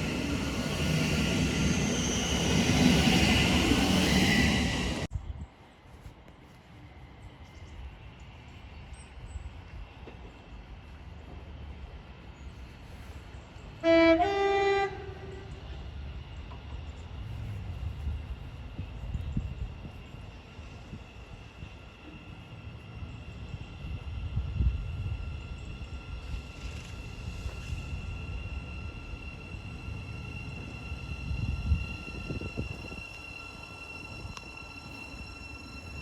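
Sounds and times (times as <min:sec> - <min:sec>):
train passing at speed: 0:00.0 - 0:05.5, 0:06.8 - 0:36.0
two-note train horn: 0:13.8 - 0:15.6.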